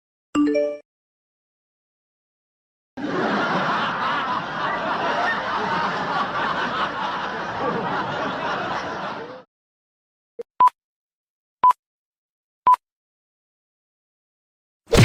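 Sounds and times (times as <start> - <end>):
audience laughter: 3.0 - 9.5.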